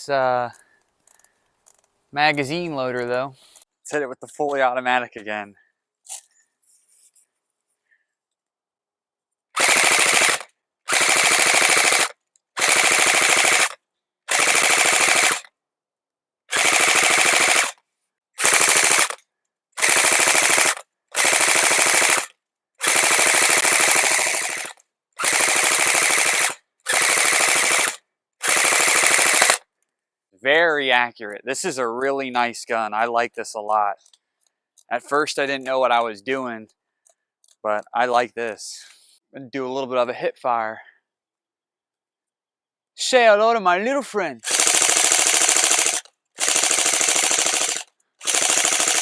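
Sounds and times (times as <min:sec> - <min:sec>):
airsoft rifle automatic fire: 0:09.6 - 0:15.5, 0:16.5 - 0:17.8, 0:18.4 - 0:19.2, 0:19.8 - 0:29.6, 0:44.4 - 0:49.0.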